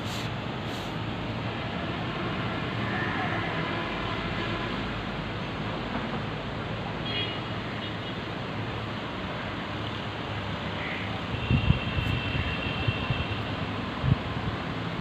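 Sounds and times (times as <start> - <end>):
vehicles passing on wet road: 0.0 - 15.0
heavy rain on street: 8.3 - 15.0.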